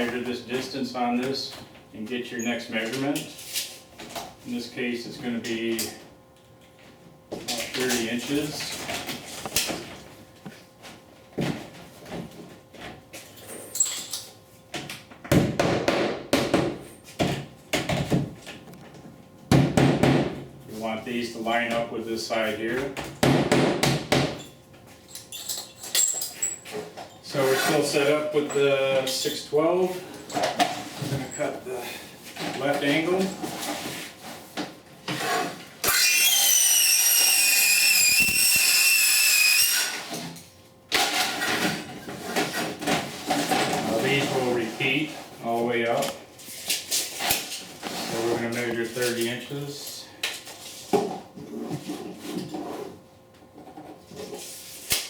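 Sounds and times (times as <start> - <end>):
circular saw cutting: 35.9 - 40.0.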